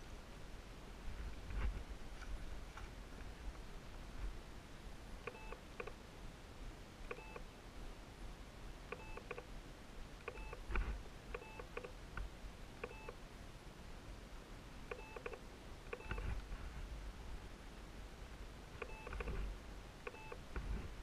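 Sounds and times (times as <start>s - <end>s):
faint chirping beeps: 5.2s - 5.9s, 7.1s - 7.5s, 8.9s - 9.4s, 10.2s - 10.7s, 11.3s - 12.0s, 12.8s - 13.2s, 14.9s - 16.2s, 18.8s - 19.4s, 20.0s - 20.4s.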